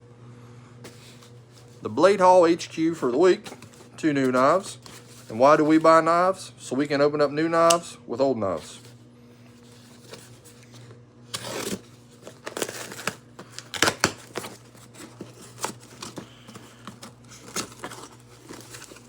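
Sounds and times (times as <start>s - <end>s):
knife cutting package: 9.6s - 19.0s
packaging crinkling: 9.6s - 19.0s.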